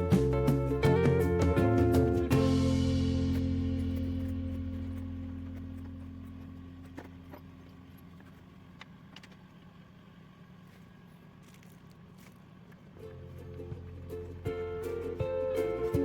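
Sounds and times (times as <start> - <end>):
background music: 0.0 - 4.4, 13.7 - 16.0.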